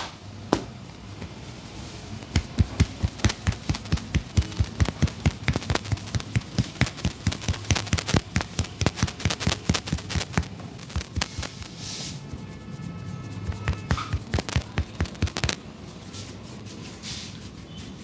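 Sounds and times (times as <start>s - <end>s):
hands slapping in massage: 2.2s - 11.7s, 13.5s - 15.6s.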